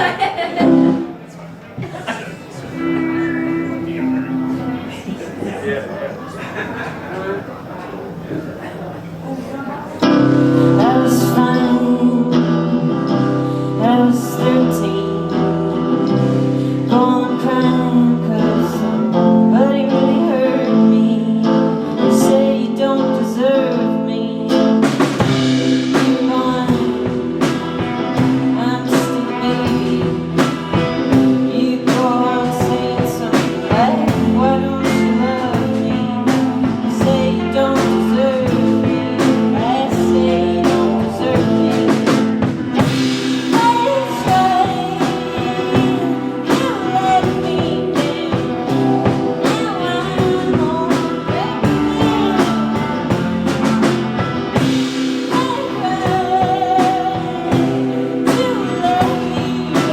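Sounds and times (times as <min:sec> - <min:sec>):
electric guitar: 0:00.0 - 0:05.5, 0:08.6 - 0:59.9
person singing: 0:10.0 - 0:59.9
drum kit: 0:24.5 - 0:59.9.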